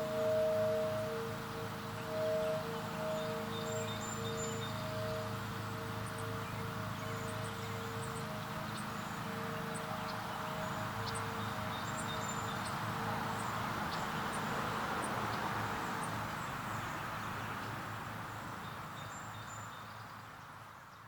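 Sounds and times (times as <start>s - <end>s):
faint two-note tone: 0.0s - 12.3s
steady background hum: 0.0s - 15.3s
birds chirping: 0.0s - 20.5s.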